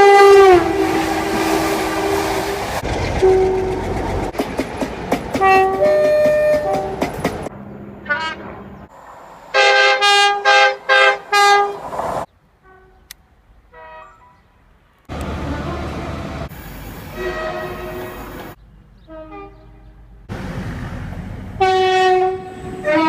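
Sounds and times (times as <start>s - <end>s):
short loud train horn blasts: 0.0s - 3.9s, 5.4s - 7.0s, 8.1s - 8.5s, 9.6s - 11.8s, 12.6s - 14.5s, 17.1s - 18.3s, 19.1s - 20.0s, 21.6s - 23.0s
two-tone train horn: 0.0s - 4.0s, 5.4s - 7.1s, 8.1s - 8.5s, 9.6s - 11.8s, 12.6s - 14.5s, 17.1s - 18.3s, 19.1s - 20.1s, 21.6s - 23.0s.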